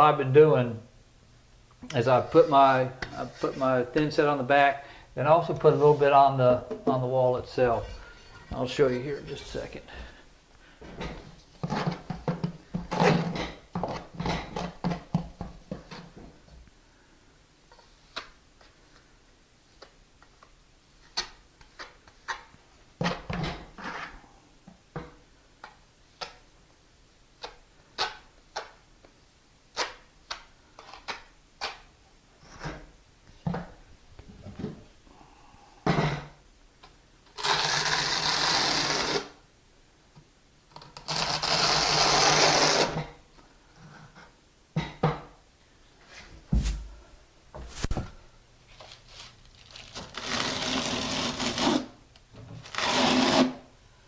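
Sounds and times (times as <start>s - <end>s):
loud rasping scrape: 37.4s - 39.3s, 41.1s - 43.0s, 50.2s - 51.9s, 52.7s - 53.6s
trowel scraping mortar on tile: 37.4s - 39.3s, 41.1s - 43.0s, 50.2s - 52.0s, 52.7s - 53.6s.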